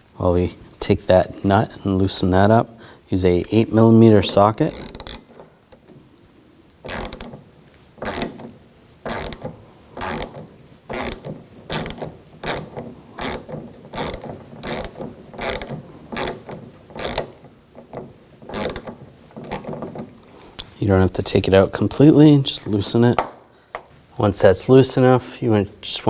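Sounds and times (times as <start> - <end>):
ratchet pawl clicks: 4.7 - 5.8, 6.8 - 7.4, 8.0 - 8.4, 9.1 - 17.5, 18.5 - 19.8.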